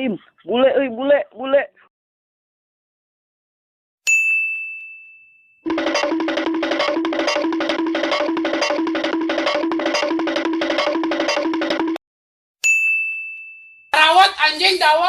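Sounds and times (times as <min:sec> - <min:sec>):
bouncy plucked notes: 0:05.7 - 0:12.0.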